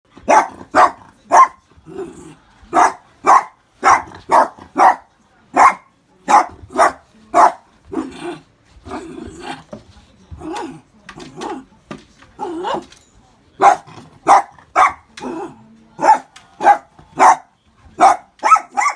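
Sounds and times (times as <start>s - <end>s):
dog grumbling: 1.8s - 2.5s, 7.9s - 9.7s
dog barking sharply: 2.8s - 7.6s, 18.0s - 18.9s.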